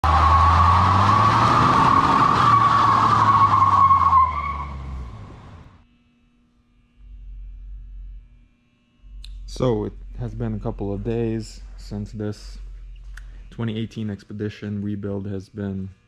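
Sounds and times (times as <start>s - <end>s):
car tyres squealing: 0.0s - 5.7s
faint low hum: 5.9s - 16.0s.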